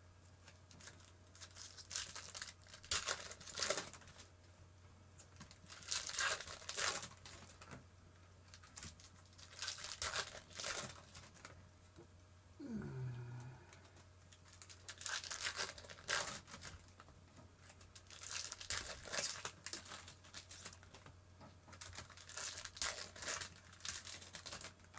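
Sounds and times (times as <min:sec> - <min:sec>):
card pack wrappers crinkling: 0:00.7 - 0:04.3, 0:08.5 - 0:11.5, 0:14.5 - 0:17.0, 0:18.0 - 0:21.1, 0:21.8 - 0:24.8.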